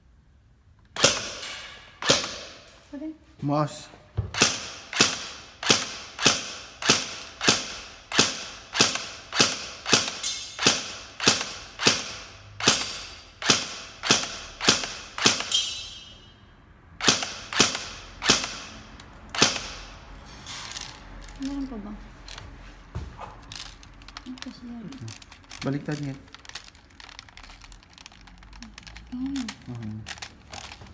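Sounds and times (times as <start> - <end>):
airsoft gun single shots: 1.0 - 2.7, 4.4 - 15.7, 17.0 - 18.8, 19.4 - 19.9.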